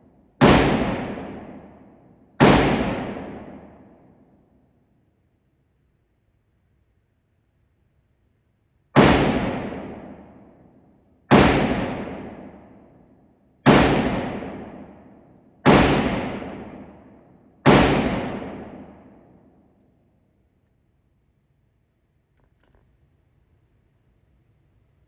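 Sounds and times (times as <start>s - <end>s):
gunshots with reverberant tail: 0.4s - 3.9s, 9.0s - 10.5s, 11.3s - 12.7s, 13.6s - 19.5s.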